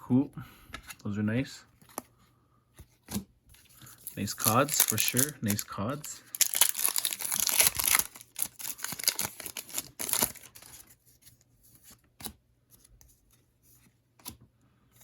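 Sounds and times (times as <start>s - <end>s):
foil wrapper crinkling: 4.0s - 10.8s.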